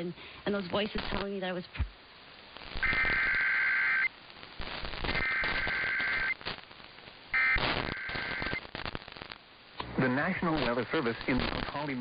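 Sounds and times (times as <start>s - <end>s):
radio static and crackle: 0.0s - 12.0s
warbling digital data tones: 2.8s - 4.1s, 4.8s - 6.4s, 7.3s - 9.0s.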